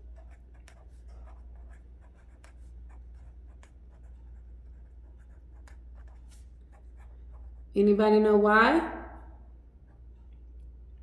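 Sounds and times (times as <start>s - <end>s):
pen scratching while writing: 0.0s - 7.6s
steady low hum: 0.0s - 11.0s.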